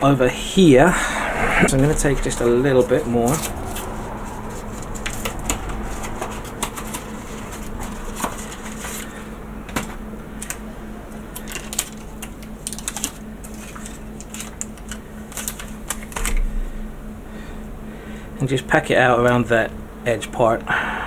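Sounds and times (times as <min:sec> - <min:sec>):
steady low hum: 0:00.0 - 0:06.6, 0:16.2 - 0:21.0.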